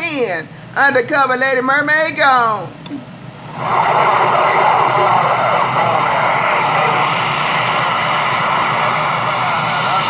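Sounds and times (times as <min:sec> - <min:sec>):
faint warbling distant radio stations: 0:03.4 - 0:10.0
radio static hiss: 0:03.4 - 0:10.0.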